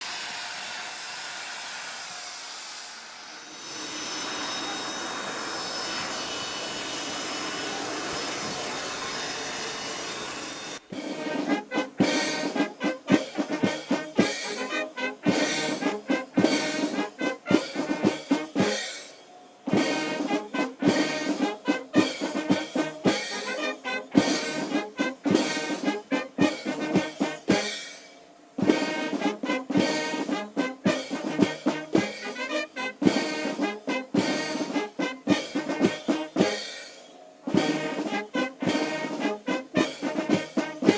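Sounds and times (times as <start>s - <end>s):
jet engines rushing and whining: 0.0s - 11.6s
brass band playing: 10.8s - 40.9s
sharp drum beats: 10.9s - 40.9s.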